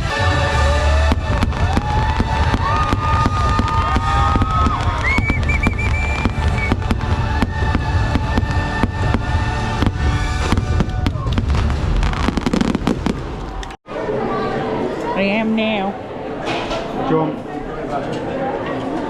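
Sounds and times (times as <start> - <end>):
fireworks bangs: 0.0 - 13.7.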